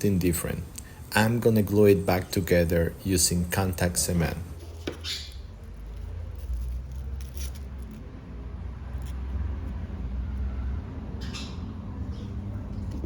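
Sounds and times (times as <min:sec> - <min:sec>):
steady low hum: 0:00.0 - 0:13.0
small objects clicking and rustling: 0:06.0 - 0:08.1.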